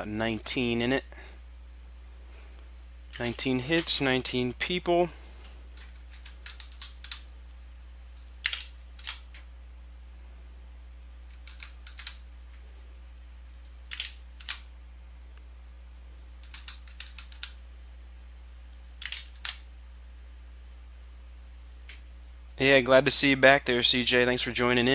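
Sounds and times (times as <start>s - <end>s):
low electrical hum: 0.0s - 24.9s
computer keyboard typing: 5.8s - 7.3s, 8.2s - 9.4s, 11.3s - 12.2s, 13.5s - 14.6s, 16.4s - 17.6s, 18.7s - 19.6s.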